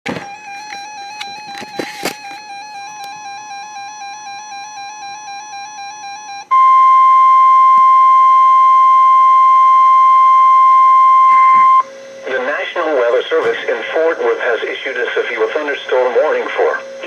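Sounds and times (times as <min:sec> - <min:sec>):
loud steady alarm tone: 0:00.0 - 0:17.0
electronic tone trilling: 0:00.1 - 0:12.8.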